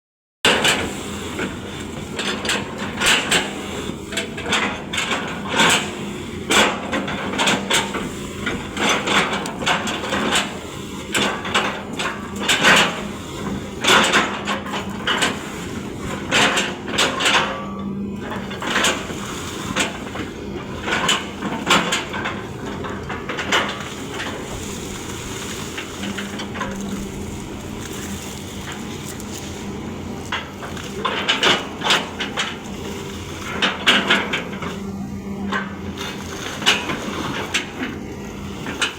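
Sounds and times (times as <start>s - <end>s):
engine hum: 0.5s - 38.9s
excavator knocking and clattering: 0.5s - 38.9s.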